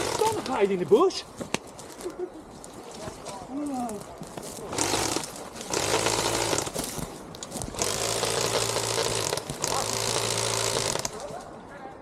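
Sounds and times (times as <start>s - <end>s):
airsoft gun firing full auto: 7.8s - 11.2s.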